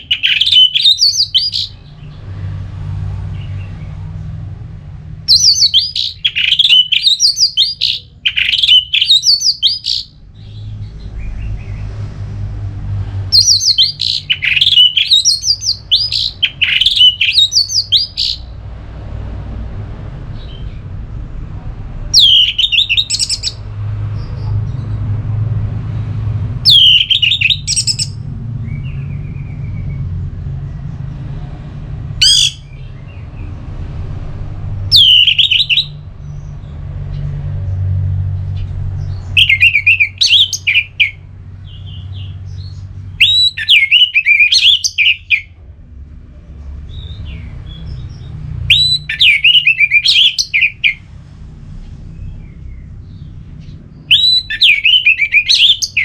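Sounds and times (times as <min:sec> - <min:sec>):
thrush whistled song: 0:00.0 - 0:01.9, 0:05.3 - 0:10.2, 0:13.3 - 0:18.5, 0:22.1 - 0:23.6, 0:26.6 - 0:30.0, 0:32.2 - 0:32.8, 0:34.9 - 0:36.0, 0:39.3 - 0:41.2, 0:43.2 - 0:45.5, 0:46.9 - 0:51.1, 0:54.0 - 0:56.0
steady low hum: 0:00.0 - 0:35.0, 0:50.7 - 0:55.2.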